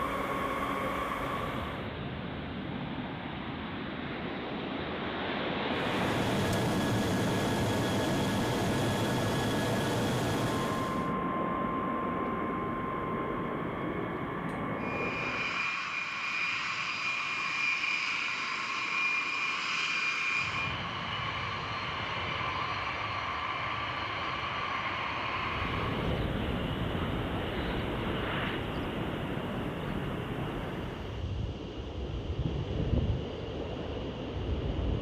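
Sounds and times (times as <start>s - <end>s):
jet engines whining: 0.0s - 1.9s, 5.7s - 31.2s.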